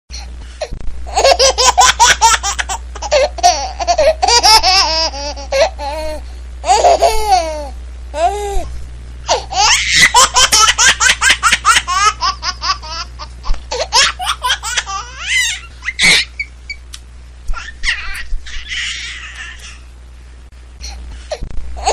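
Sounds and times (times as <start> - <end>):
child giggling: 9.5 - 16.5, 17.5 - 19.8
child squealing: 17.5 - 19.8.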